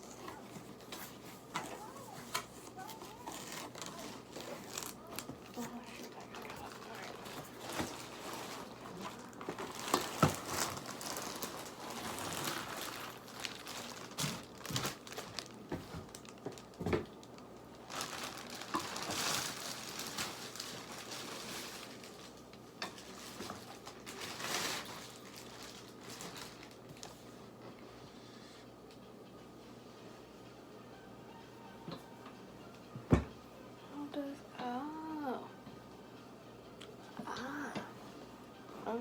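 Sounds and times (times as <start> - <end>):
packaging crinkling and rustling: 0.0 - 27.8.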